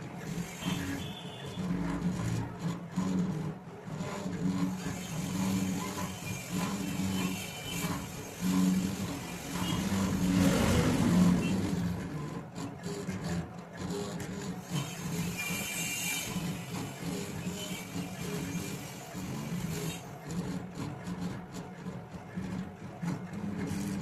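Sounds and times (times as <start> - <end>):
stepper motors whining: 4.9 - 12.4.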